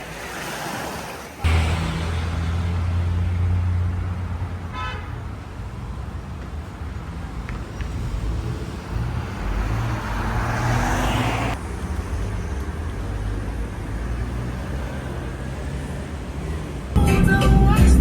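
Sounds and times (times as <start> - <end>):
vehicle engine and road noise: 0.0 - 18.0
loud rushing: 1.4 - 4.7.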